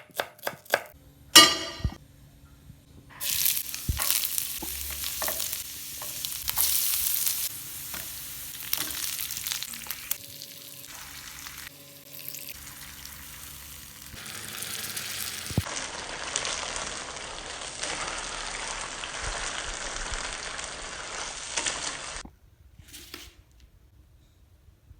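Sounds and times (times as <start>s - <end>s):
chicken frying and sizzling: 3.1s - 22.2s.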